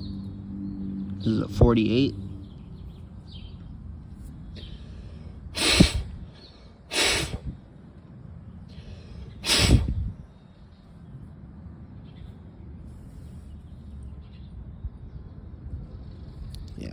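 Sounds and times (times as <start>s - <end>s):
puffs of breath blown through jet: 4.6s - 7.6s, 8.7s - 10.2s.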